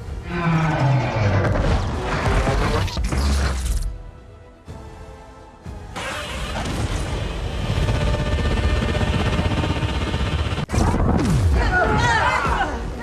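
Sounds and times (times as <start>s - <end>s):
monster roar sound effect: 0.2s - 2.8s.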